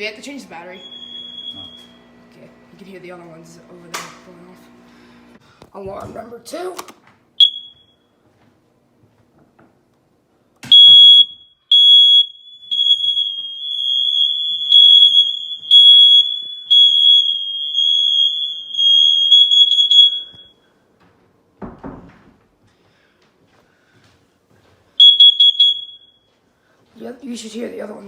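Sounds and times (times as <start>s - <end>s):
smoke alarm beeping: 0.6s - 2.4s, 7.4s - 8.2s, 10.6s - 20.8s, 25.0s - 26.4s.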